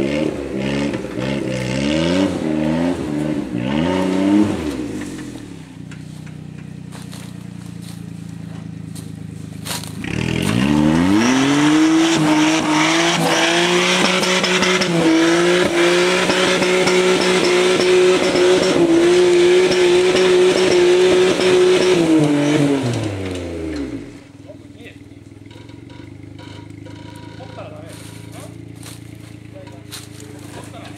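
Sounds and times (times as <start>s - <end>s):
car engine revving: 0.0s - 30.9s
knocks and rattles: 25.3s - 28.6s.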